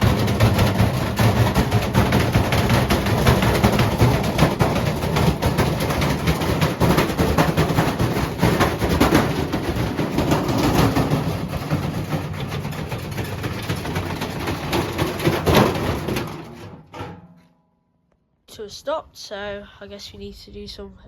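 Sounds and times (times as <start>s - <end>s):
washing machine motor rumble: 0.0s - 16.5s
brick banging in washing machine: 0.0s - 17.4s.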